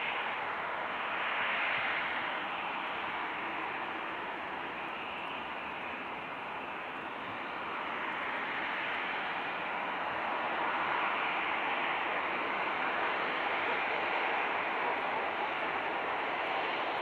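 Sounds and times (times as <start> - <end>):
jet engines rushing: 0.0 - 17.0.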